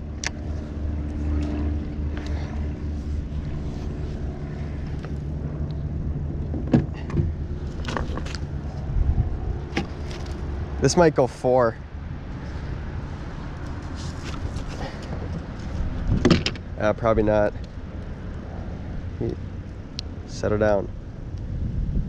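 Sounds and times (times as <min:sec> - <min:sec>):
boat motor humming: 0:00.0 - 0:20.2
knocks and clatters in boat: 0:16.1 - 0:16.6.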